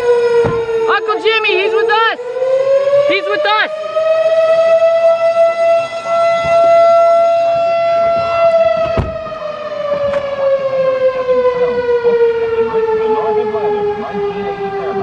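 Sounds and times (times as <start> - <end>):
mechanical siren winding down: 0.0 - 15.0
short thump: 0.4 - 0.6, 7.6 - 10.3.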